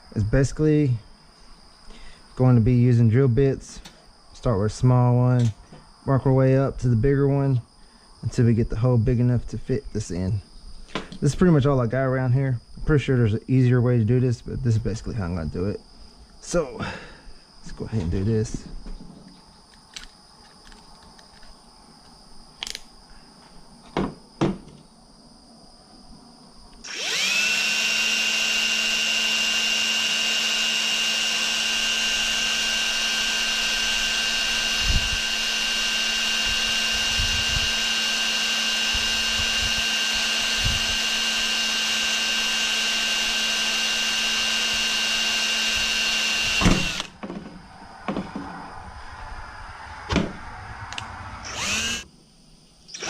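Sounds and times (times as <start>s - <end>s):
electric drill drilling: 26.8s - 47.2s, 51.4s - 52.1s.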